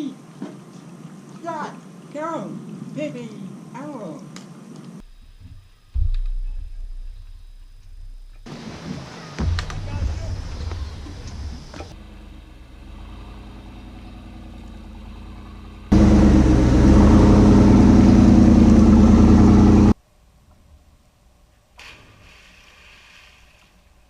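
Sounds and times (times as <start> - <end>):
engine running with even hum: 11.0 - 20.0.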